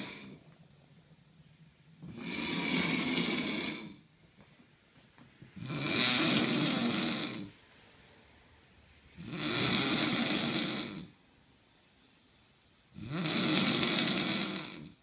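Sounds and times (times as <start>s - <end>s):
man snoring heavily: 0.0s - 0.4s, 2.1s - 4.0s, 5.6s - 7.6s, 9.2s - 11.2s, 13.0s - 15.0s.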